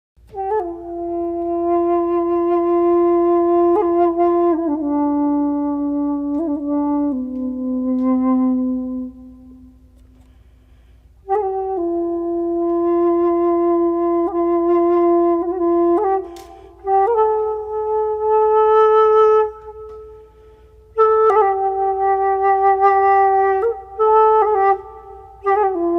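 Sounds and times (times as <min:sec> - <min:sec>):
wind instrument slow melody: 0:00.2 - 0:25.9.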